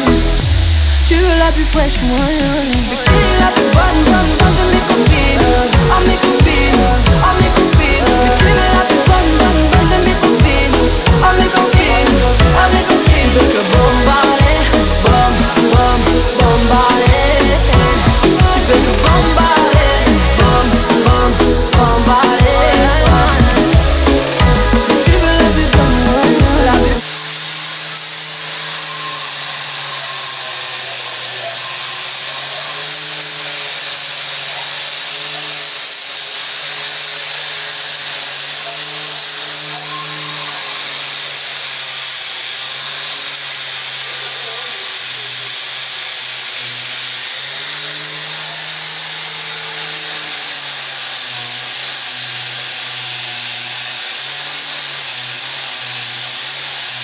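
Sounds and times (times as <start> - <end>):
electric power tool whining: 0.0 - 57.0.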